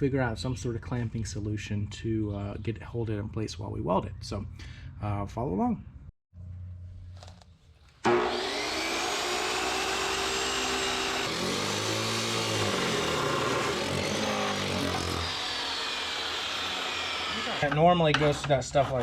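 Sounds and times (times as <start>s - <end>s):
chop saw cutting steel: 8.0s - 19.0s.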